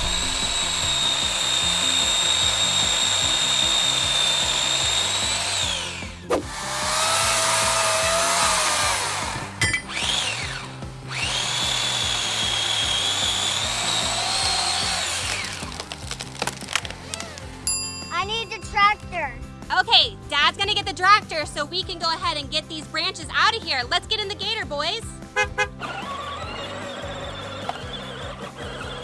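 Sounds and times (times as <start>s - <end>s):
rough noisy stretch: 0.0s - 2.8s, 13.5s - 17.7s
electric chainsaw whining: 0.0s - 17.7s, 25.8s - 29.0s
background music: 0.0s - 29.0s.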